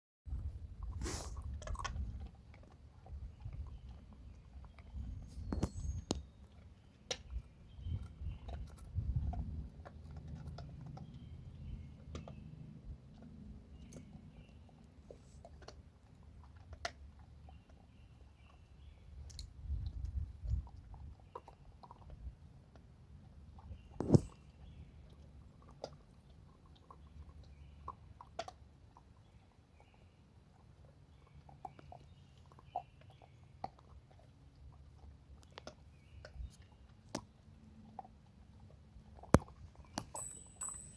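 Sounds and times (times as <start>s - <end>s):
dog mouth smacks and clicks: 0.8s - 17.8s, 19.2s - 29.3s, 30.6s - 40.2s
dogs smacking mouths: 0.8s - 17.8s.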